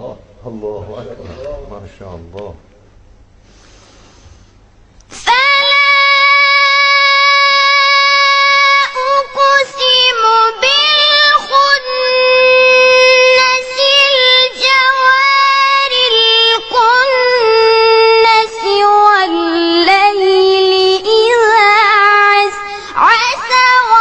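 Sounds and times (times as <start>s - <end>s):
child reciting melodic chant: 5.2s - 24.0s.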